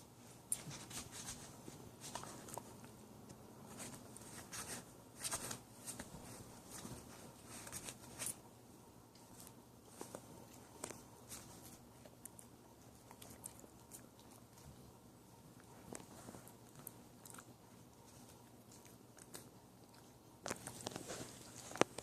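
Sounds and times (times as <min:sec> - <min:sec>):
puppy chewing: 0:09.2 - 0:22.0.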